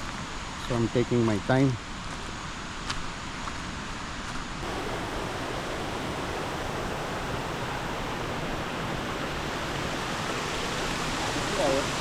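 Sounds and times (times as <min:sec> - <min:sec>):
flowing water rushing: 0:04.6 - 0:12.0.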